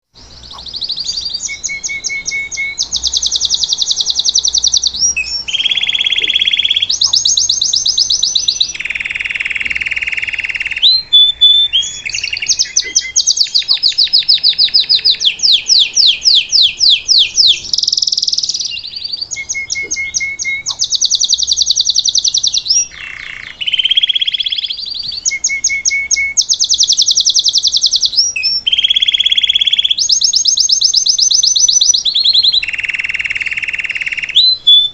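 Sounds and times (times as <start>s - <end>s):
canary singing trills: 0.2s - 34.9s.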